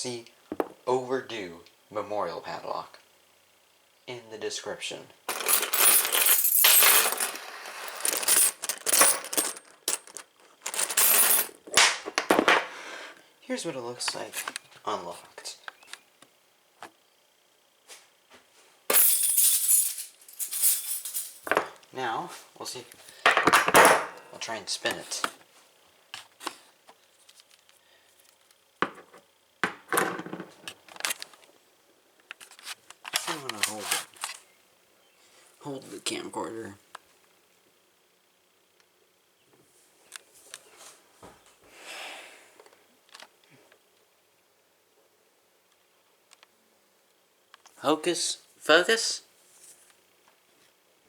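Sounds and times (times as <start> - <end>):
padlock and keys clinking: 8.2 - 11.6.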